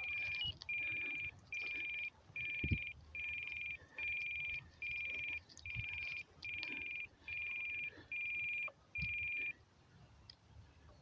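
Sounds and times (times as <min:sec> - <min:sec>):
buzzy electronic alarm beeps: 0:00.0 - 0:09.5.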